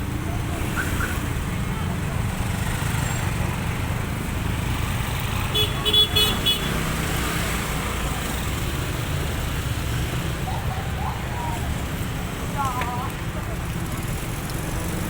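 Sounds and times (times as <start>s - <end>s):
road traffic rumble: 0.0s - 15.0s
vehicle horn tooting: 5.5s - 6.8s.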